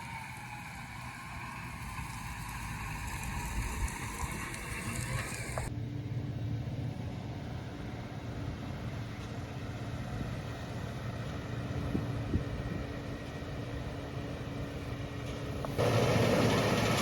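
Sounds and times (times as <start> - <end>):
combine harvester running: 0.0 - 17.0.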